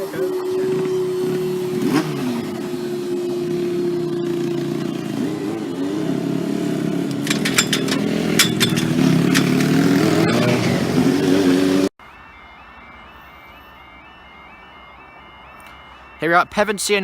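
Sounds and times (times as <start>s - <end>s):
train running: 0.0s - 4.3s, 5.1s - 10.8s
crossing alarm ringing: 0.0s - 17.0s
wheels clacking over rail joints: 6.9s - 10.8s.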